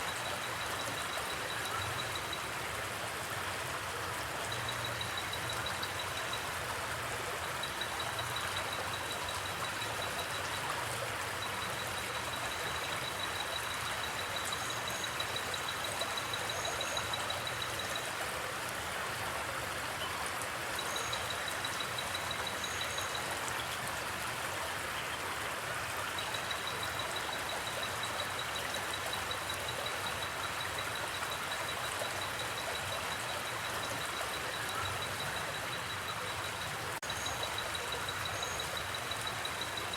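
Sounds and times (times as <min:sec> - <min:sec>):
river rushing over its bed: 0:00.0 - 0:39.9
cricket trilling: 0:07.4 - 0:18.1, 0:20.8 - 0:23.3, 0:26.2 - 0:39.9.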